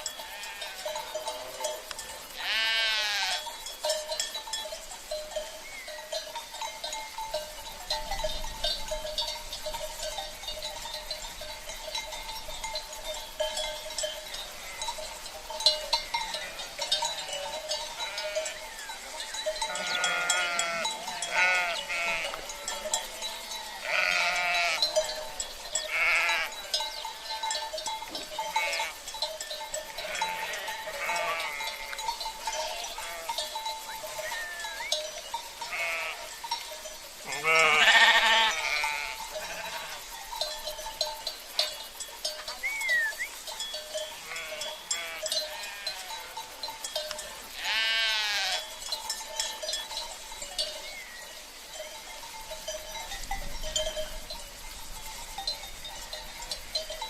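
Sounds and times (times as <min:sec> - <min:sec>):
livestock bells ringing: 0:00.0 - 0:57.0
sheep bleating: 0:00.2 - 0:01.7, 0:02.4 - 0:03.4, 0:16.3 - 0:25.0, 0:25.9 - 0:26.6, 0:28.5 - 0:29.0, 0:30.0 - 0:32.0, 0:32.6 - 0:33.5, 0:35.6 - 0:36.3, 0:37.3 - 0:40.0, 0:44.2 - 0:46.4, 0:47.6 - 0:48.7.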